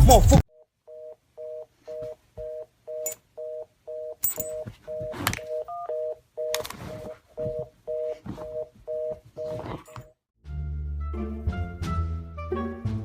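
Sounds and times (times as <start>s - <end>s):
telephone busy signal: 0.9s - 9.7s.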